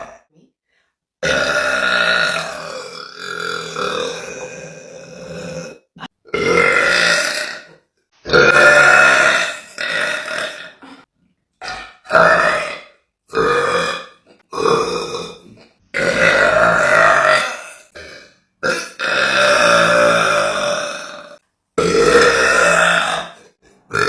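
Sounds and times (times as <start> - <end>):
woman burping: 0.0 - 0.3, 1.2 - 24.0.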